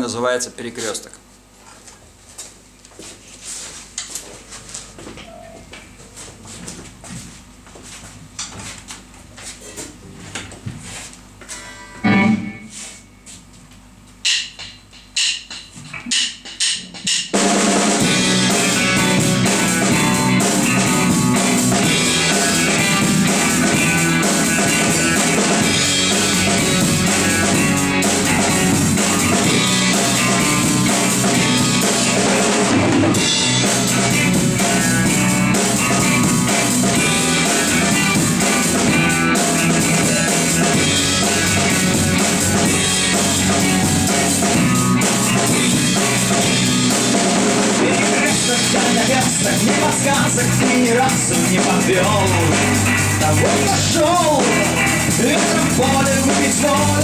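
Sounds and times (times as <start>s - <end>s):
rock band playing: 11.5s - 12.9s, 17.3s - 57.0s
sharp drum hits: 12.0s - 12.8s.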